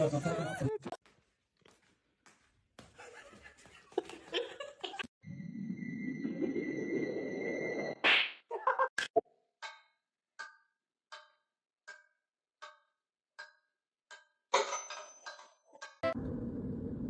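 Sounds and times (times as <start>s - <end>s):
clock-like ticking: 9.6s - 14.4s.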